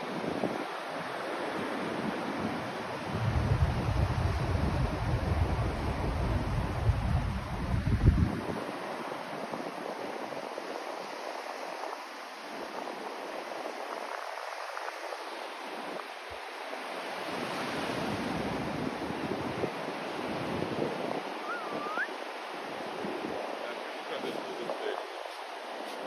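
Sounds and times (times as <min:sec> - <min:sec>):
steady rushing white noise: 0:02.7 - 0:08.2.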